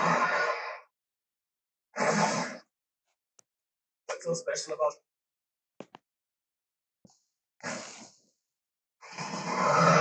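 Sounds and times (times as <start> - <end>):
creature roar: 0.0 - 0.8, 9.0 - 10.0
creature breathy exhale: 7.6 - 8.2.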